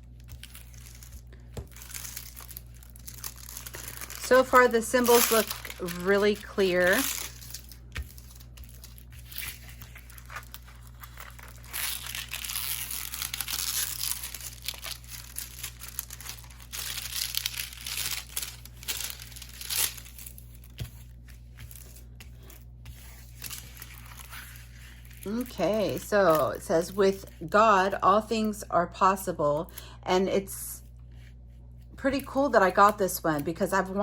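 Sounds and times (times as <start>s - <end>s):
plastic film crinkling: 0.0s - 27.5s.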